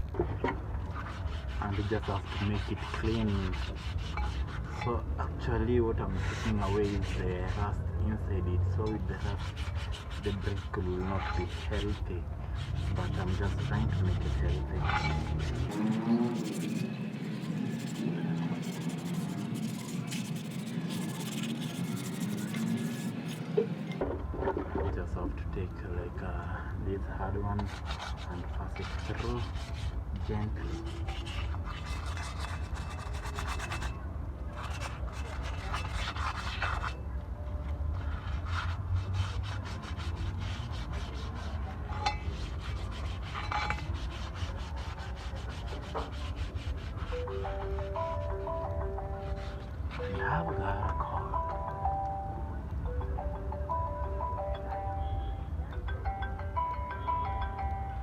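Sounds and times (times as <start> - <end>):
hand scraping rust off metal: 12.7 - 23.5, 41.0 - 44.6.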